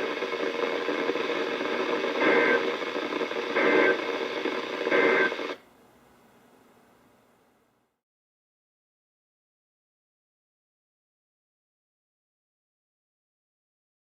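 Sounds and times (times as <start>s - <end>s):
static hiss: 0.0s - 7.9s.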